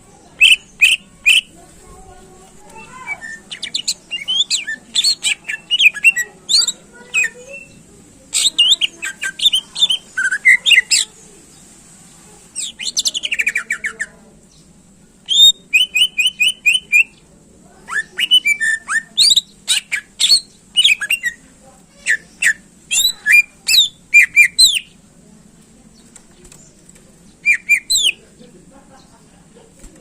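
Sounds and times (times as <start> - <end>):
songbird singing loudly: 0.4 - 1.5, 2.8 - 11.2, 12.6 - 14.0, 15.3 - 17.2, 17.9 - 21.4, 22.0 - 25.0, 27.3 - 28.2.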